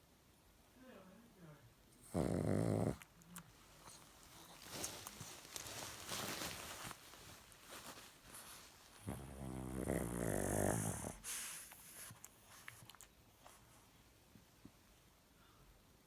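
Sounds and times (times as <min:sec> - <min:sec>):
dog snoring: 0:02.0 - 0:03.0, 0:09.0 - 0:11.6
breathy snuffles: 0:09.0 - 0:12.2.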